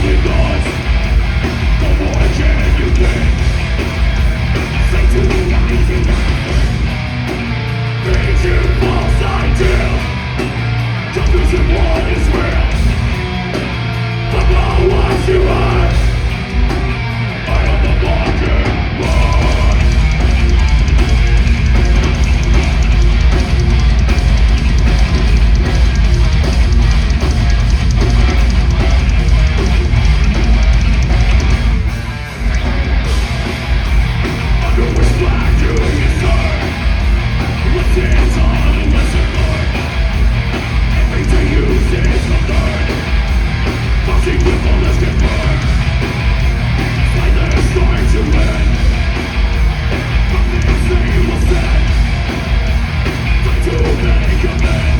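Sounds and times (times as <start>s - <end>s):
heavy metal band playing live: 0.0s - 54.9s.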